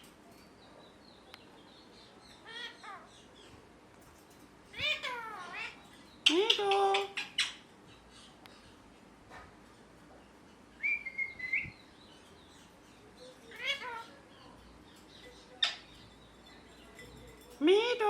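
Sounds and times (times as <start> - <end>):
parrot whistling: 10.8 - 11.7.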